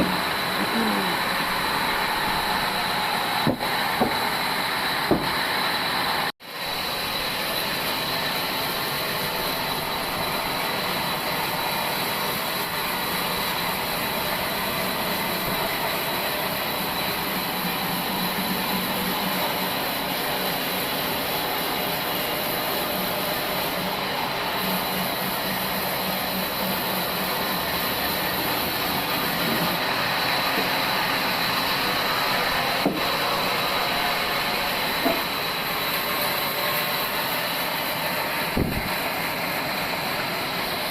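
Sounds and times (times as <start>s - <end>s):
band saw cutting log: 0.0s - 40.9s
sharp knocks: 3.4s - 4.3s, 5.1s - 5.4s.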